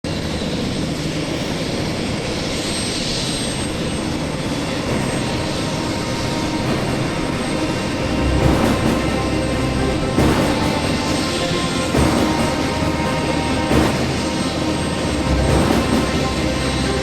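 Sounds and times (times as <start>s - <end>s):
aircraft engine running: 0.1s - 17.0s.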